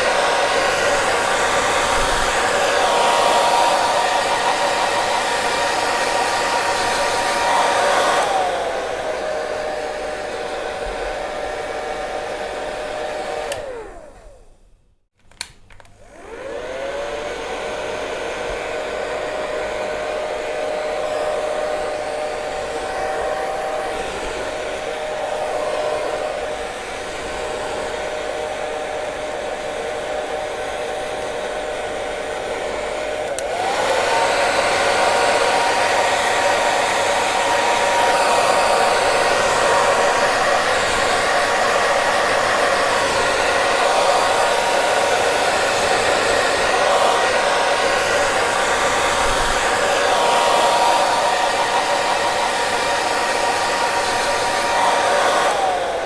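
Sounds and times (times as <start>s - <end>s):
hair dryer blowing: 0.0s - 14.8s, 15.4s - 56.0s
hair dryer switch click: 13.3s - 14.0s, 15.3s - 16.0s, 33.2s - 33.9s, 54.7s - 55.8s.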